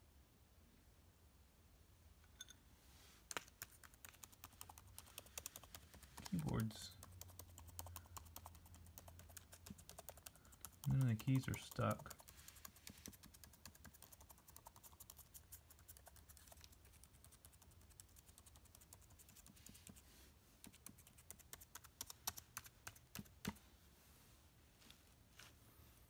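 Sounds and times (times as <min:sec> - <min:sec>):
laptop keys clicking: 0:03.3 - 0:15.0.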